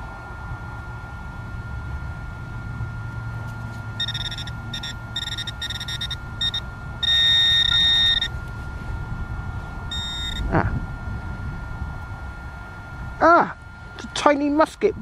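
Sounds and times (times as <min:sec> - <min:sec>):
low wind rumble: 0:00.0 - 0:15.0
pinpointer long steady tone: 0:00.0 - 0:15.0
pinpointer probe beeping: 0:04.0 - 0:08.4, 0:09.9 - 0:10.5.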